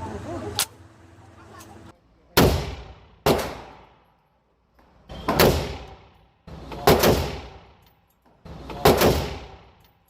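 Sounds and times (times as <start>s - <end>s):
rifle single shots: 2.4s - 3.9s.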